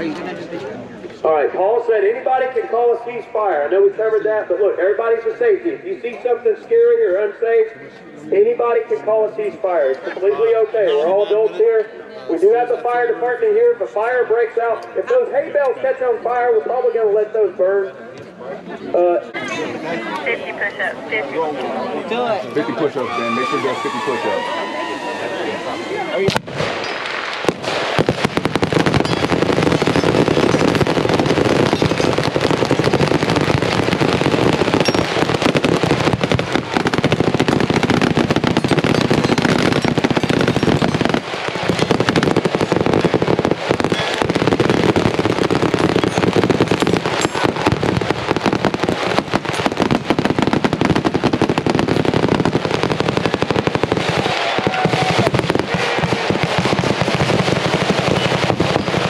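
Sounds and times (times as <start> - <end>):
dense gunfire: 26.2 - 59.0.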